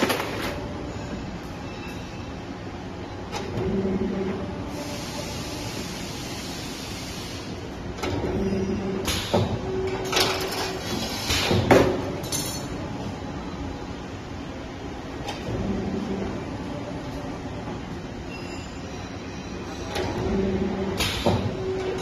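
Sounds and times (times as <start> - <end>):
machine hiss: 4.7 - 7.7.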